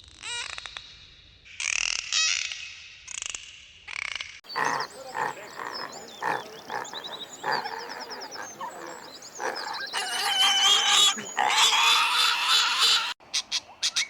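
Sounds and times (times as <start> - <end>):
birds chirping: 4.4 - 14.0
animal giving short calls: 4.5 - 13.2.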